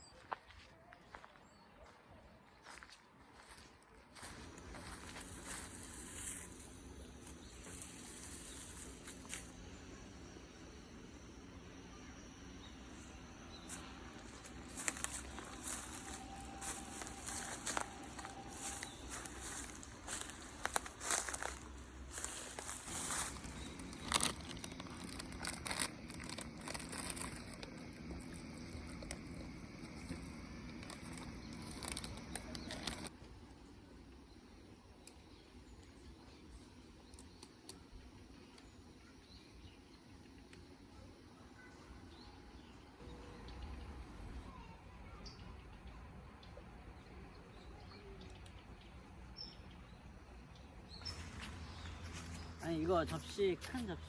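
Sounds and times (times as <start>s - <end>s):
faint background noise: 0.0s - 54.0s
rustling and crinkling: 3.4s - 9.8s, 13.7s - 33.2s
steady low hum: 4.2s - 54.0s
high bird chirps: 4.3s - 25.2s, 50.9s - 54.0s.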